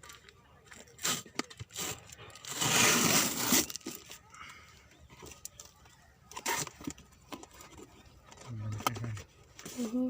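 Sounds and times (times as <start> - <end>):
packaging rustling and crinkling: 0.0 - 4.2.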